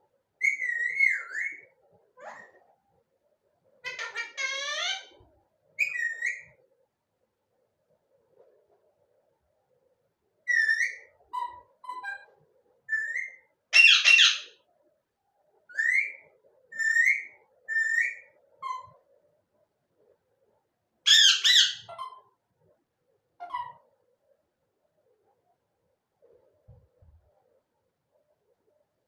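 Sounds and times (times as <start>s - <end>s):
parrot whistling: 0.4s - 1.6s
harsh parrot calls: 3.8s - 5.2s, 12.9s - 14.6s, 21.1s - 22.3s.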